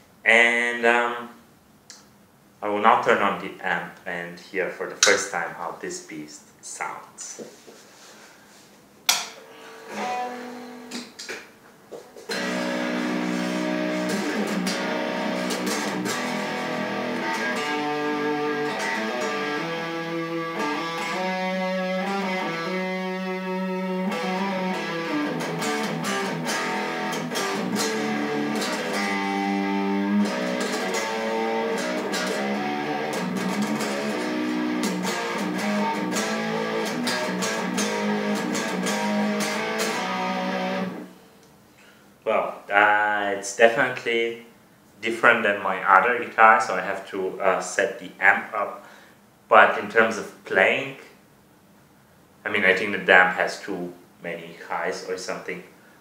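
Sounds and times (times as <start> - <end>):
amplified electric guitar: 9.2 - 11.4, 12.2 - 41.2.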